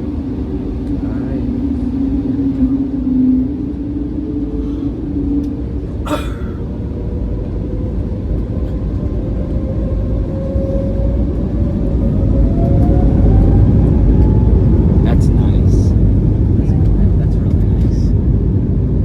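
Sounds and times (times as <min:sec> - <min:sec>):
airliner rumbling down runway: 0:00.0 - 0:19.0.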